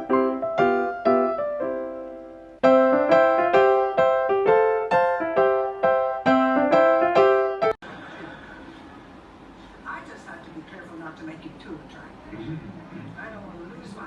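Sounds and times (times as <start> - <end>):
piano music: 0.0 - 7.8.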